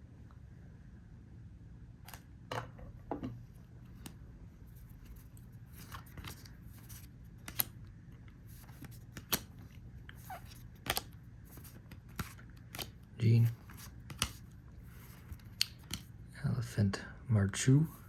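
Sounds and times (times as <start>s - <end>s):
cards clicking: 5.8s - 7.8s, 8.6s - 16.1s.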